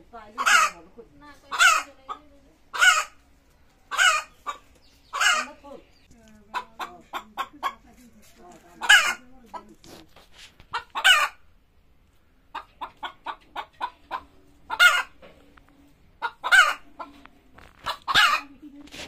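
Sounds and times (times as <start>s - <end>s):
hen cackling: 0.3s - 3.2s, 3.9s - 5.8s, 8.8s - 9.3s, 10.7s - 11.5s, 12.5s - 15.2s, 16.2s - 17.2s, 17.9s - 18.6s.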